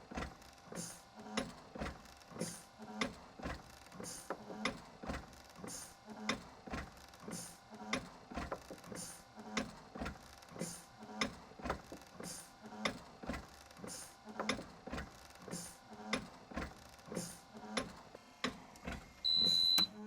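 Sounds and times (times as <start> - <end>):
high electronic beep: 19.3 - 19.9.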